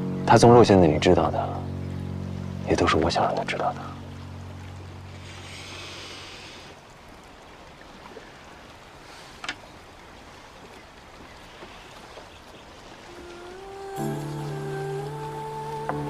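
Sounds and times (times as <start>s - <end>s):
low hum: 0.0s - 6.8s, 13.1s - 16.0s
brighter hiss: 5.2s - 6.8s, 13.3s - 16.0s.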